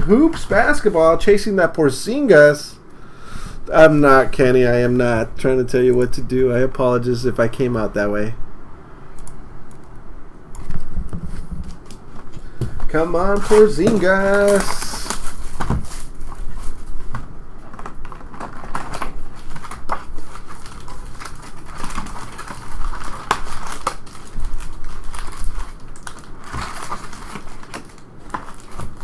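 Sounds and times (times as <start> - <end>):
packaging crinkling and tearing: 0.0 - 1.2, 11.6 - 29.0.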